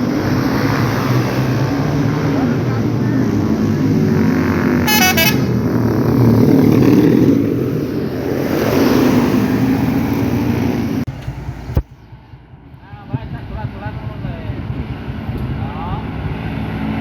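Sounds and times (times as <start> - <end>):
large vehicle engine rumbling: 0.0 - 17.0
multi-tone musical horn: 4.8 - 5.6.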